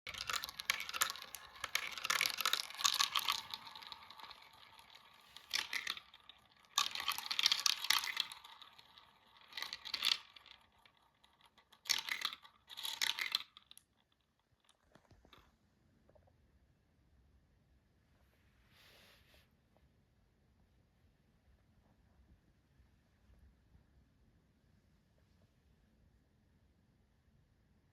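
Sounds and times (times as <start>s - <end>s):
marbles rattling down track: 0.1s - 14.0s.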